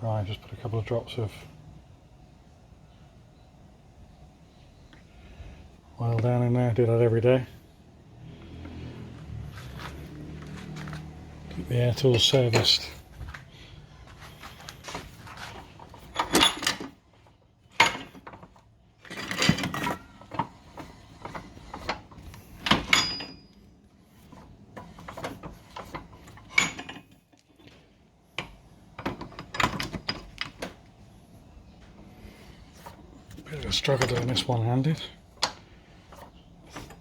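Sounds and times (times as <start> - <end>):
metal tools clattering on workbench: 14.8 - 17.0, 17.7 - 22.0, 22.6 - 23.6, 25.0 - 27.4, 29.0 - 30.7.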